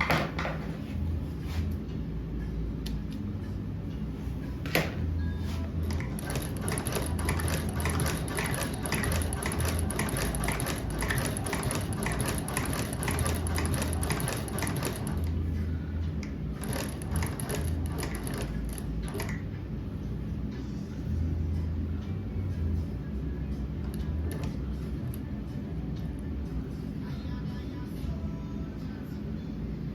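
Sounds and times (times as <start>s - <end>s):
sewing machine needle strokes: 5.9s - 15.3s, 16.6s - 19.4s.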